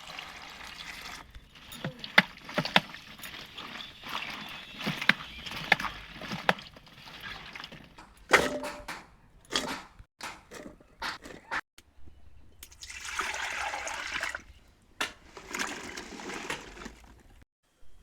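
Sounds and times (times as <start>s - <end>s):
knocks and clatter: 1.4s - 11.6s.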